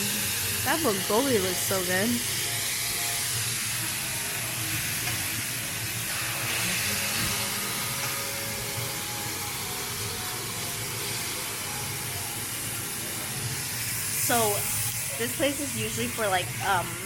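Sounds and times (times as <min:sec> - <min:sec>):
meat sizzling on a grill: 0:00.0 - 0:17.0.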